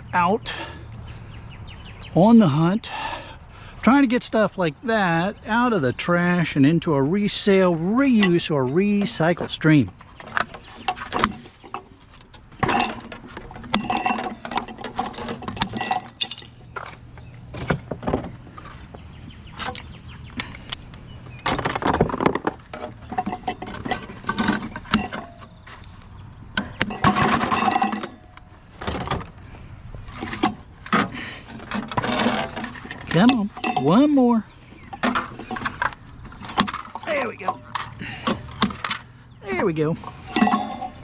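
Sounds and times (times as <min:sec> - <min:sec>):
faint low engine hum: 0:00.0 - 0:21.8, 0:22.6 - 0:41.0
scrap items clattering: 0:08.0 - 0:18.9, 0:21.5 - 0:26.0, 0:26.7 - 0:29.4, 0:30.0 - 0:39.1, 0:39.8 - 0:41.0.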